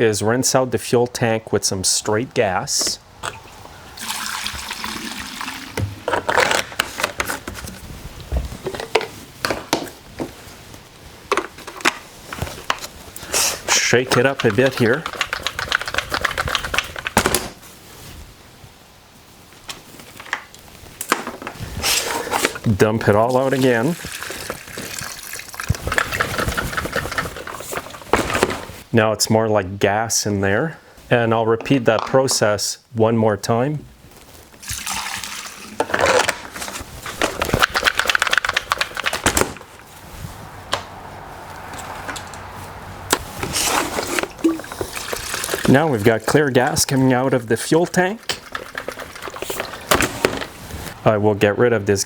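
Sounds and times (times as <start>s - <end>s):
rapid rattle of clicks and knocks: 14.1s - 17.4s, 37.3s - 39.6s
fuel sloshing in a tank: 23.3s - 28.3s, 43.2s - 50.9s.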